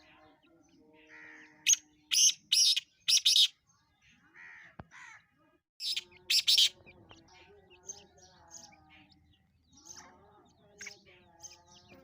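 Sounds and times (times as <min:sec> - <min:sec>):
bird harsh grating calls: 0:01.1 - 0:03.6.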